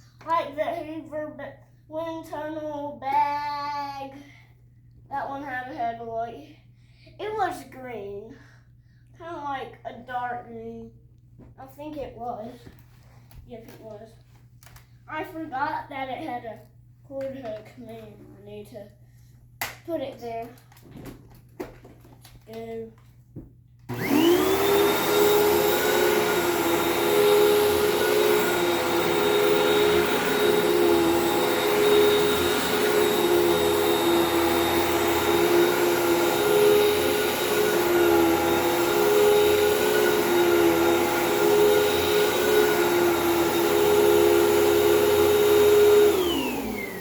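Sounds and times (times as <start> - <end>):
vacuum cleaner motor whine: 23.9 - 47.0.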